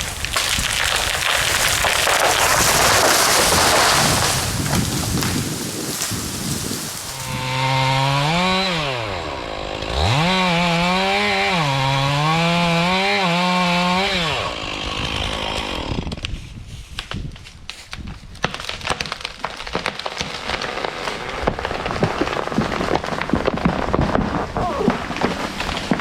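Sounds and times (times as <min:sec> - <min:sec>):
light crackles and snaps: 0:00.0 - 0:07.3
chainsaw revving: 0:06.7 - 0:16.1.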